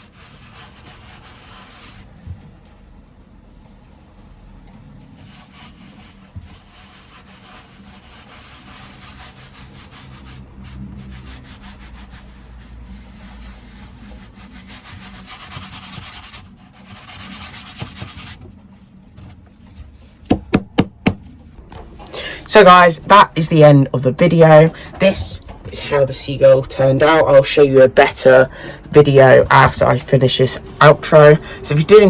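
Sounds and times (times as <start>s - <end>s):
dry rubbing on canvas: 0.0s - 2.2s, 4.0s - 21.2s.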